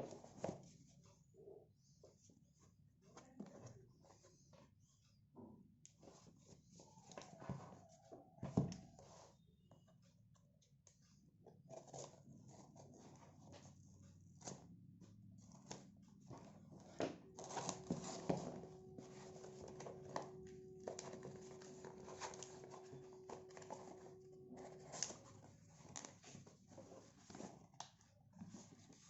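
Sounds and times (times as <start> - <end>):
faint hum: 16.3 - 26.1.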